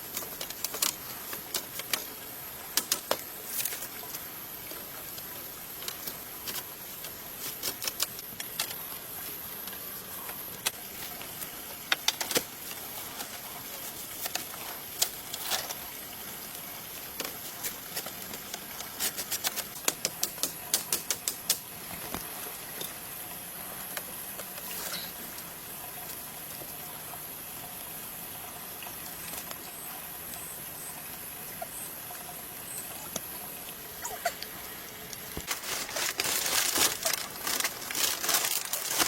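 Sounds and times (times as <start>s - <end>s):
sharp irregular taps and clicks: 19.7s - 21.7s.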